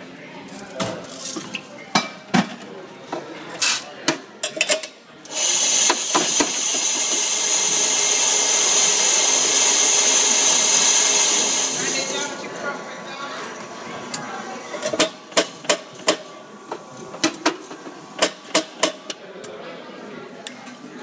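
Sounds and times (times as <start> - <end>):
cups and machine parts clicking: 3.6 - 12.1
coffee machine hissing: 5.3 - 12.8.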